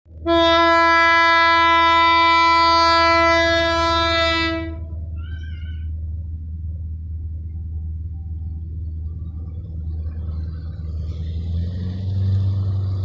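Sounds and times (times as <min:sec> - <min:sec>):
locomotive horn blast: 0:00.1 - 0:05.3
locomotive engine rumbling: 0:00.1 - 0:13.0.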